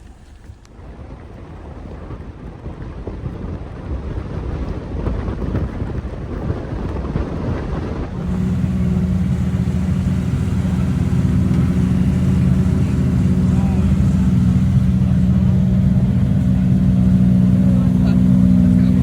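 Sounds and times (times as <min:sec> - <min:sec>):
car engine running: 0:08.1 - 0:19.0.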